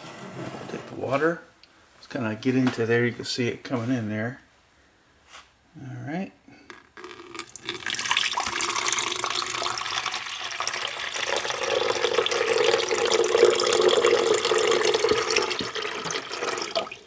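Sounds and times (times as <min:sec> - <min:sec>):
water running from a tap into a pot: 0:07.3 - 0:17.0.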